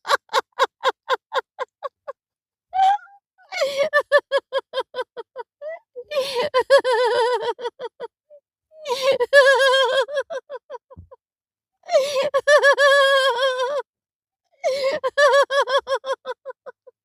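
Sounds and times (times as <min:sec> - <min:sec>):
person laughing: 0:00.0 - 0:02.2.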